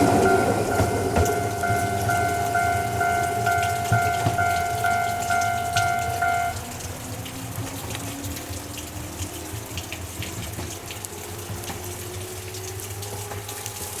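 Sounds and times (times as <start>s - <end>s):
electric train motor whine: 0.0s - 6.6s
train rushing noise: 0.0s - 6.6s.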